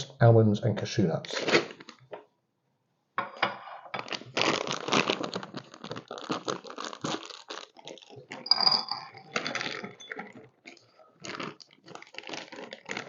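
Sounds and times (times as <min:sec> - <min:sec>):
plastic snack packet crinkling: 0:01.2 - 0:02.2, 0:04.0 - 0:13.0.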